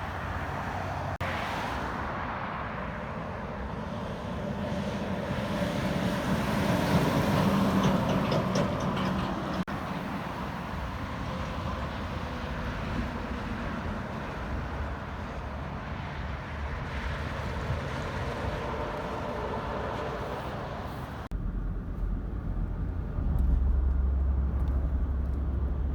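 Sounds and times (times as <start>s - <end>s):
passing vehicles rushing: 0.0s - 25.9s
deep engine rumble: 21.2s - 25.9s.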